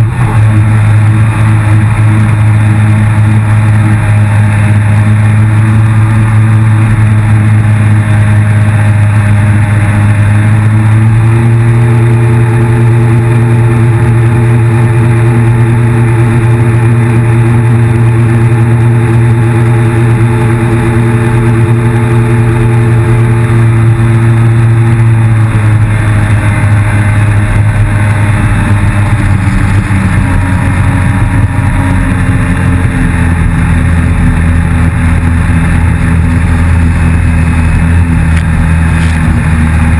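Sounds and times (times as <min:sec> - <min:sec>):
jet ski engine running hard: 0:00.0 - 0:39.9.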